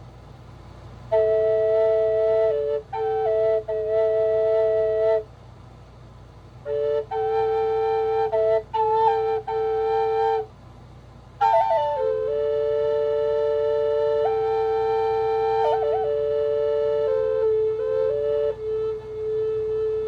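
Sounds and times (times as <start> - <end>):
breathy flute melody: 1.1 - 5.4, 6.6 - 10.6, 11.4 - 20.0.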